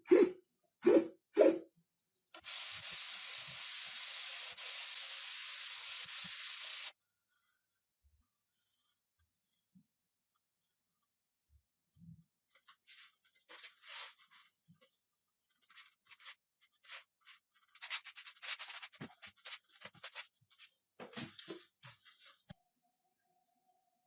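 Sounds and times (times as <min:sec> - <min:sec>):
scratchy sanding strokes on foam: 0:02.4 - 0:06.9.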